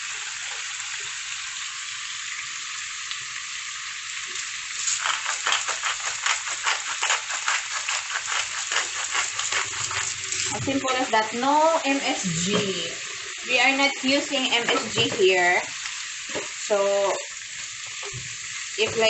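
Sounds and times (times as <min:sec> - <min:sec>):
seafood sizzling in a hot pan: 0:00.0 - 0:19.0
spatula scraping and tossing food: 0:04.8 - 0:11.4.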